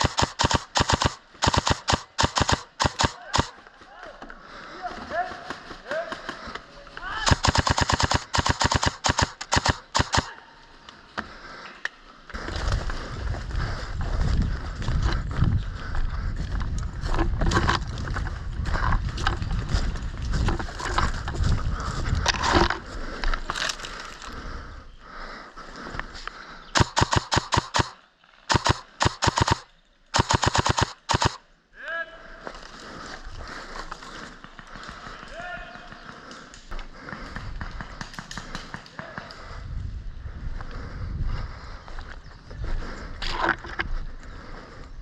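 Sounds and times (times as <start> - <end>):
airsoft gun firing: 0.0 - 3.5, 7.2 - 10.3, 26.8 - 29.6, 30.2 - 31.4.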